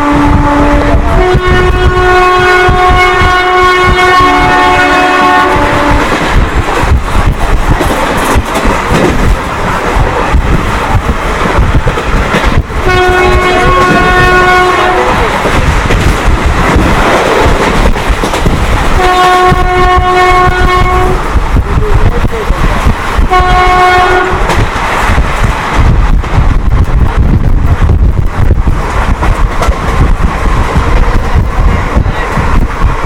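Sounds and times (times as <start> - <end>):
locomotive horn blasts: 0.0 - 6.2, 12.8 - 15.2, 18.9 - 21.2, 23.3 - 24.5
train rumbling and clattering: 0.0 - 33.0.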